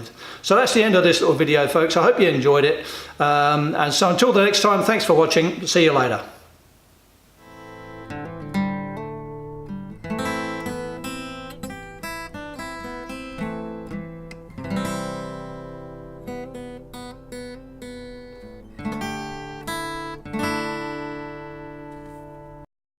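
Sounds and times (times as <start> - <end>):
acoustic guitar music: 7.4 - 22.7.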